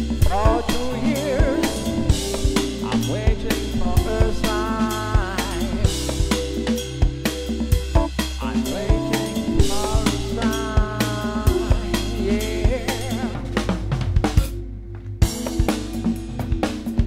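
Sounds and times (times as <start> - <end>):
bass line: 0.0 - 17.0
drum kit: 0.0 - 17.0
lead melody with bent notes: 0.0 - 17.0.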